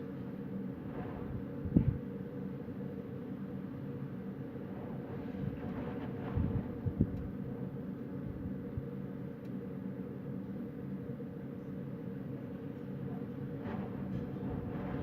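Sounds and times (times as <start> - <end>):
low steady hum: 0.0 - 15.0
wind buffeting microphone: 0.8 - 2.0, 5.4 - 7.5, 13.6 - 15.0.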